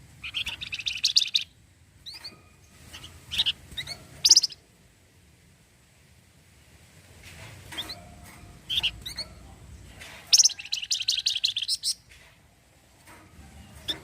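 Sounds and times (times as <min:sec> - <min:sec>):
bird chirps: 0:00.2 - 0:04.6, 0:07.8 - 0:09.4, 0:10.3 - 0:12.0
bird rattling trill: 0:00.2 - 0:04.6.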